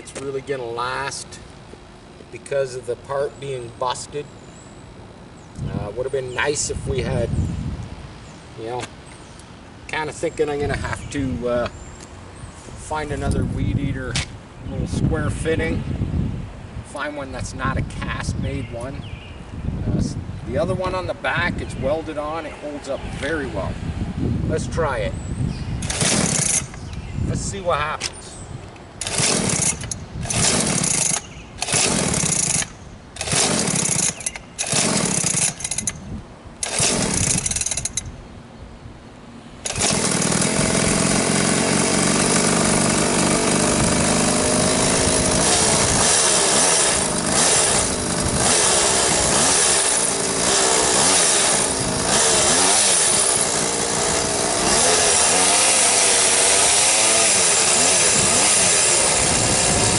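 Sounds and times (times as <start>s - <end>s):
small two-stroke engine revving: 25.8s - 26.7s, 29.0s - 35.9s, 36.6s - 38.0s, 39.6s - 59.9s.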